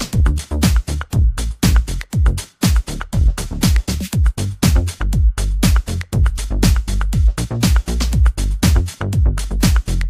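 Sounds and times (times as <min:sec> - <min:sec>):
deep bass line: 0:00.0 - 0:10.0
electronic dance music: 0:00.0 - 0:10.0
kick drum: 0:00.0 - 0:10.0.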